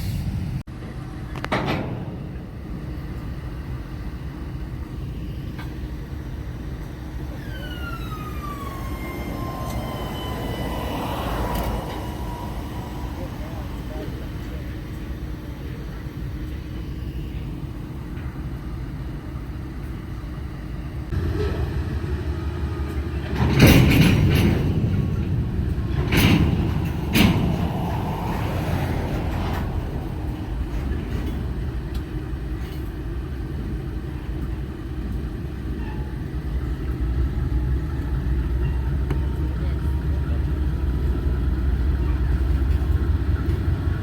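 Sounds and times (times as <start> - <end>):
loud clanks and bangs: 0.0 - 3.8, 8.2 - 15.4, 21.1 - 33.1
heavy vehicle rumbling: 0.0 - 44.0.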